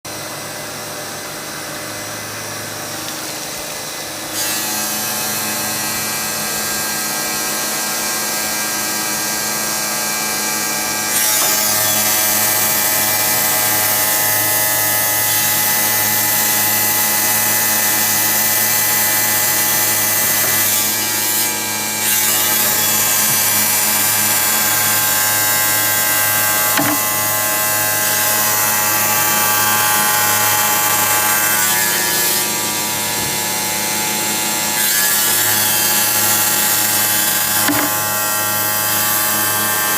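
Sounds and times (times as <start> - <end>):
tile cutter cutting tile: 2.9 - 7.6, 10.4 - 39.9.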